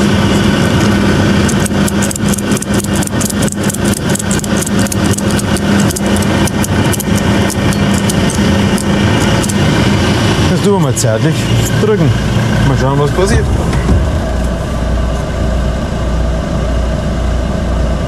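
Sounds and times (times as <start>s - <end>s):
diesel engine idling: 0.0s - 18.0s
sharp metallic clicks: 1.4s - 9.7s.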